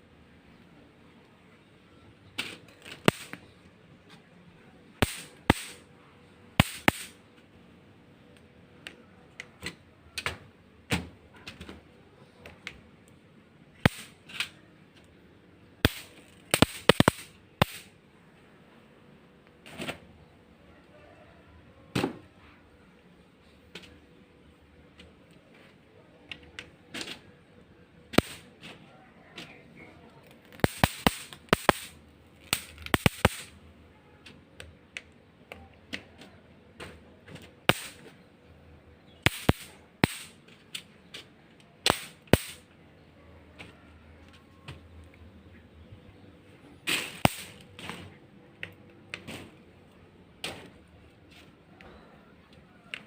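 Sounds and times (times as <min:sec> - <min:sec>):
sharp loud snaps: 0:39.2 - 0:40.4, 0:41.8 - 0:42.6.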